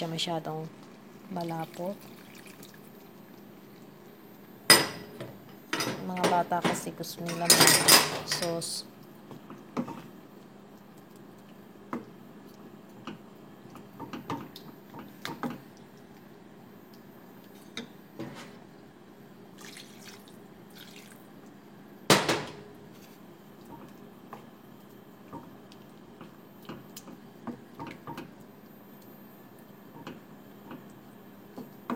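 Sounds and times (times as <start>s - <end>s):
sauce simmering and bubbling: 0.8s - 4.5s, 8.9s - 18.1s, 22.8s - 31.9s.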